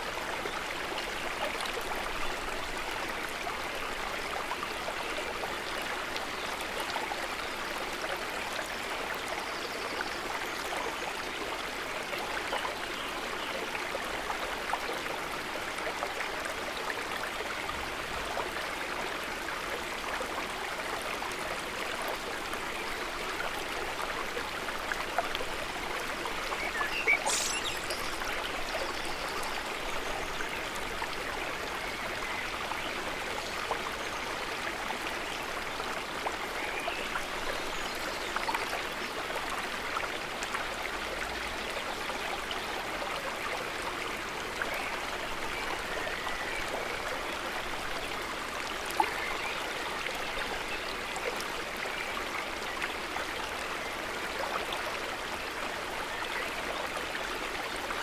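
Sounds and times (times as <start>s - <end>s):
river flowing over stones: 0.0s - 58.0s
brief sharp high sound: 27.2s - 27.8s.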